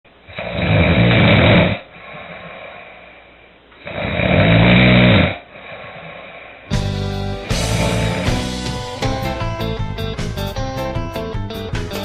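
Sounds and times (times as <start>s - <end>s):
person snoring loudly: 0.3s - 3.0s, 3.8s - 9.2s
quiet breathing: 1.7s - 4.1s, 5.3s - 6.8s
guitar music: 6.7s - 12.0s.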